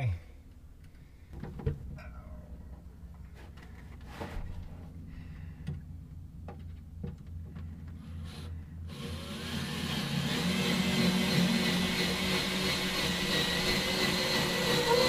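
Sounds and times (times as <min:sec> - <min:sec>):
handling knocks and clicks: 0:06.4 - 0:08.0
power drill whining: 0:08.2 - 0:15.0.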